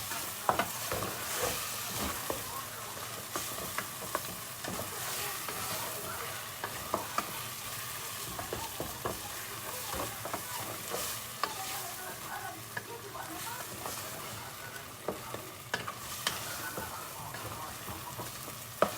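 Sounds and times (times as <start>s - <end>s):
food sizzling in a pot: 0.0s - 18.9s.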